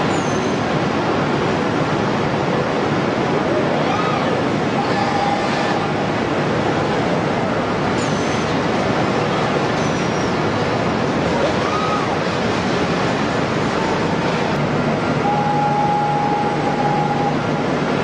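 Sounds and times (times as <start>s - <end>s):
faint steady whine: 12.9s - 18.0s.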